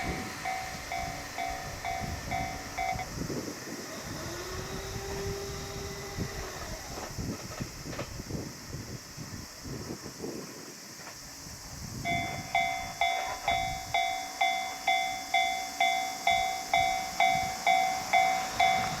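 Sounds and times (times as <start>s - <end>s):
level-crossing warning bell: 0.0s - 3.4s, 12.0s - 19.0s
low wind-like rumble: 0.0s - 14.5s.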